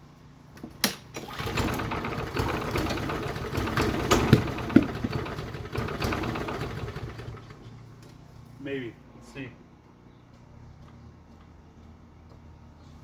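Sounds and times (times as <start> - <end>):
lawnmower engine running: 1.1 - 8.1.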